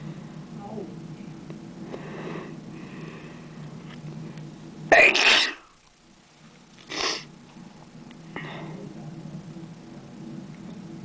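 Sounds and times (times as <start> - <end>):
person sneezing: 5.0 - 5.6.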